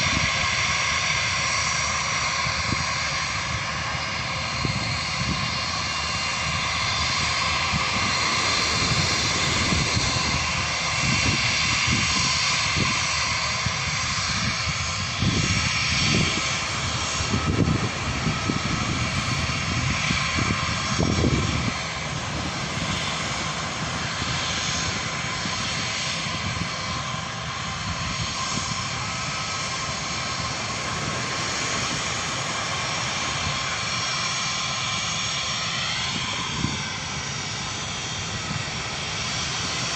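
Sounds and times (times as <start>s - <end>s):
jet airliner engines passing: 0.0s - 39.9s
wind buffeting microphone: 0.0s - 39.9s.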